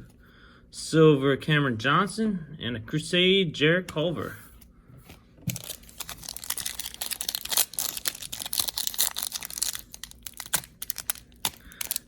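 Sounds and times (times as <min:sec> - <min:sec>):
foil wrapper crinkling and tearing: 0:05.5 - 0:12.0.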